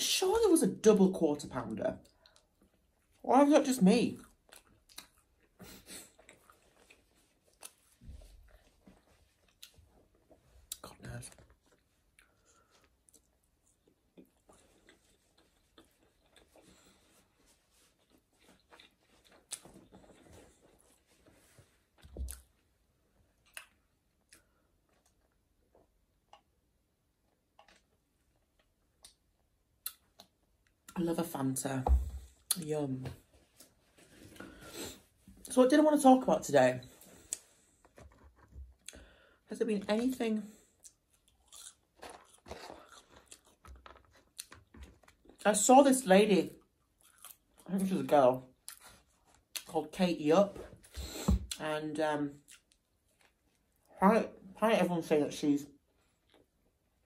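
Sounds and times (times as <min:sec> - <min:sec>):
person chewing food: 0:04.2 - 0:21.3, 0:22.0 - 0:22.7, 0:23.3 - 0:26.6, 0:27.2 - 0:31.0, 0:40.6 - 0:45.4, 0:46.6 - 0:47.7, 0:48.6 - 0:49.7, 0:52.4 - 0:53.9, 0:56.1 - 0:56.7.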